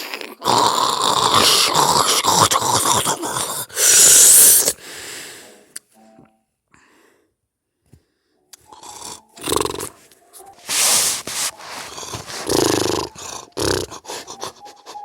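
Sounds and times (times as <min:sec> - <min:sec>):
person snoring loudly: 0:00.0 - 0:04.7, 0:08.7 - 0:10.0, 0:10.7 - 0:14.9.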